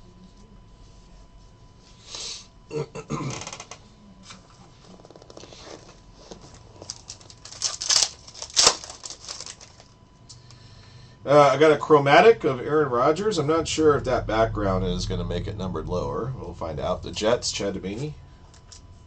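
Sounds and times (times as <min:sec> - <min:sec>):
cards and plastic sleeves rustling: 0:04.9 - 0:10.0.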